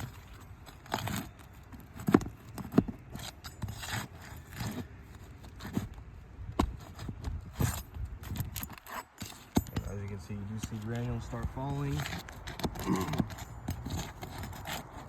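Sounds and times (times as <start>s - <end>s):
metal tool scraping shingles: 0.0s - 15.0s.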